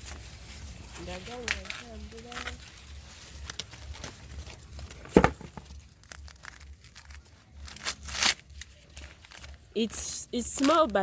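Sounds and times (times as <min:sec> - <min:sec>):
dry maize leaves rustling: 0:00.0 - 0:04.6.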